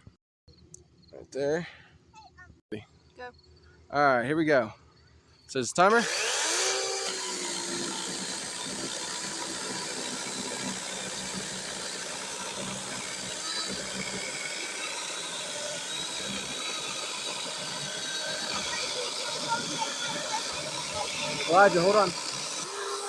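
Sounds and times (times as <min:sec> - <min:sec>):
chainsaw cutting wood: 0:05.8 - 0:23.0.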